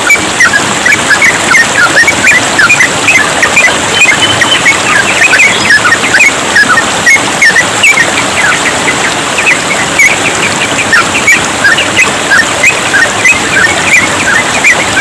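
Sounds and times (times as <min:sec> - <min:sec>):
bulbul chirping song: 0:00.0 - 0:15.0
trickling stream water: 0:00.0 - 0:15.0.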